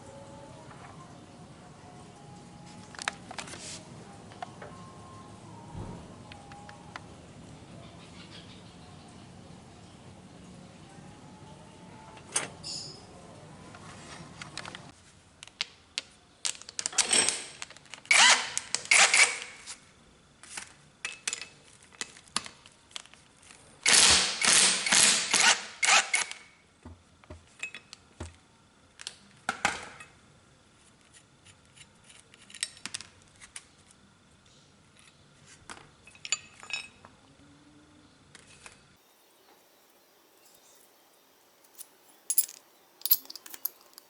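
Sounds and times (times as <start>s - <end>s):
hand tools clicking on metal: 40.4s - 41.0s, 41.6s - 44.0s.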